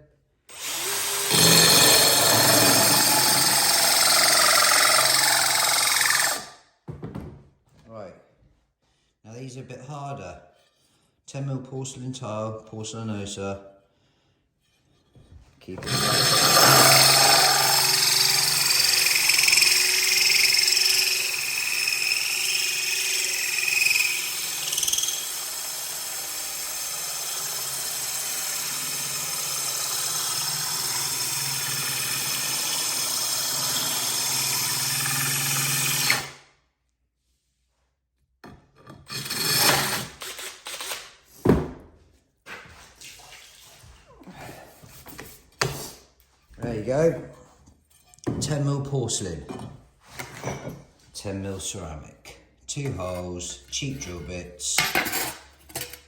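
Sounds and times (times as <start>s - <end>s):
drill grinding through tile: 0.5s - 6.6s, 15.8s - 36.4s, 39.0s - 41.1s.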